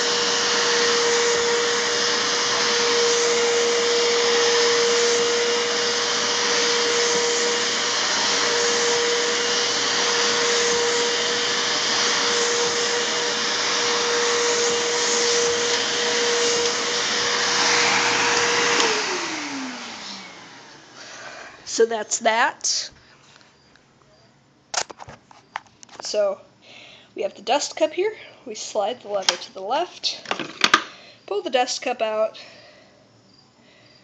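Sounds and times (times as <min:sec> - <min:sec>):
vacuum cleaner whining: 0:00.0 - 0:23.7, 0:28.6 - 0:31.0.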